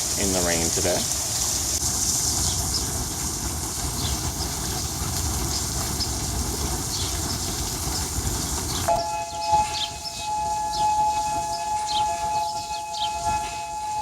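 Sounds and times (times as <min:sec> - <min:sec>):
steady rain hiss: 0:00.0 - 0:14.0
faint high chirps: 0:08.9 - 0:14.0.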